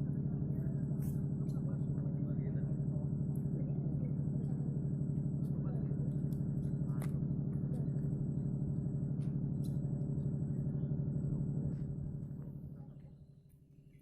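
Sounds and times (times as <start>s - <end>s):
engine running with pulsing beat: 0.0s - 14.0s.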